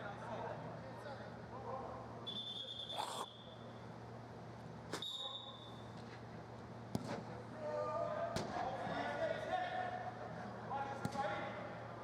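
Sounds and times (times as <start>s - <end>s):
referee's whistle blasts: 2.3s - 3.6s, 5.0s - 5.7s.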